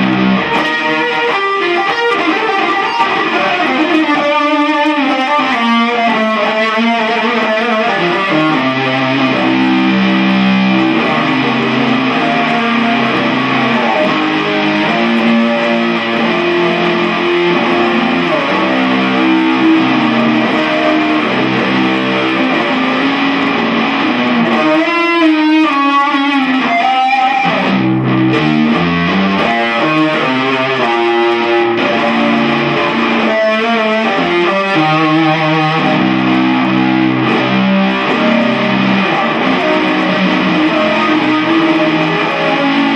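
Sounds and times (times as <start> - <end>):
distorted electric guitar music: 0.0 - 42.9.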